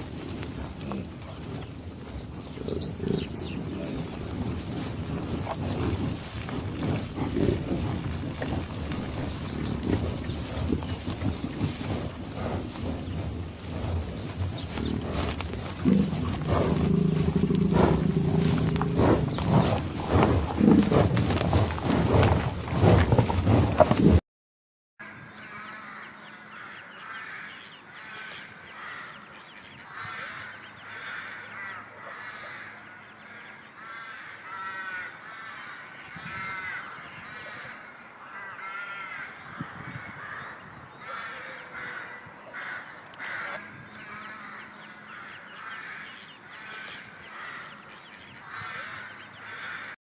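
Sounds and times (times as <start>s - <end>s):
flock of birds calling: 25.0s - 50.0s.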